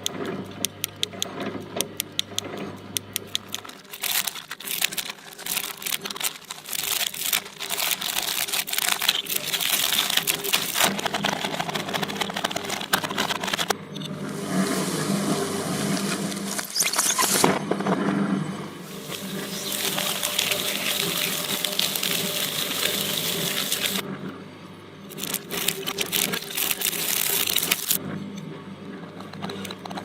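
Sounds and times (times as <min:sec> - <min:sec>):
crackling: 0:03.2 - 0:13.8, 0:18.8 - 0:24.0, 0:25.1 - 0:28.0
electric shredder motor grinding: 0:03.6 - 0:17.6, 0:18.7 - 0:24.1, 0:25.1 - 0:28.0.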